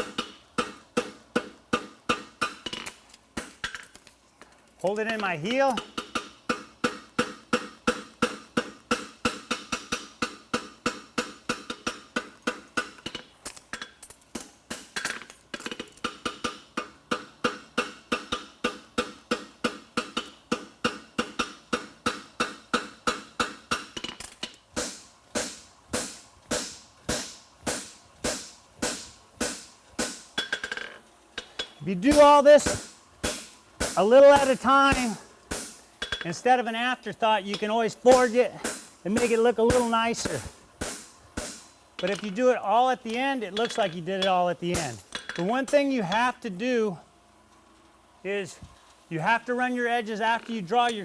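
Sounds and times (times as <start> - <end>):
hammer striking horseshoe on anvil: 5.7 - 13.2, 13.8 - 36.3, 37.5 - 42.4, 43.5 - 45.8.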